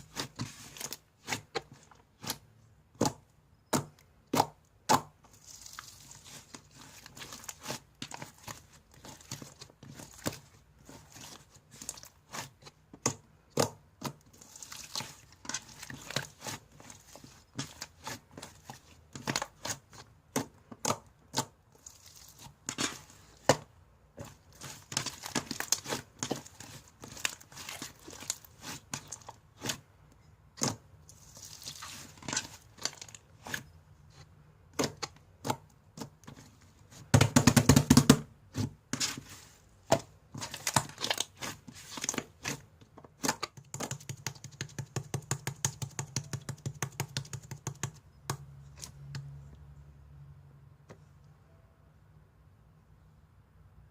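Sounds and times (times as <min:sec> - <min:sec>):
slime crinkling: 0:05.2 - 0:23.5, 0:24.2 - 0:29.9, 0:30.5 - 0:36.5, 0:38.5 - 0:44.7.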